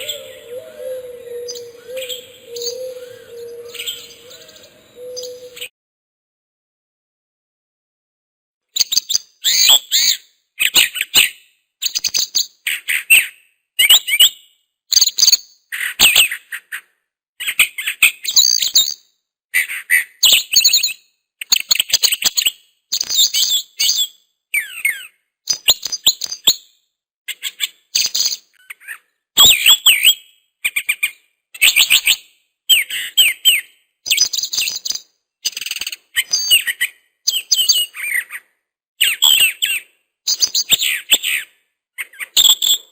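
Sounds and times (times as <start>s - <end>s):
bird chirping: 0.0s - 5.7s, 31.6s - 38.4s, 39.0s - 42.9s.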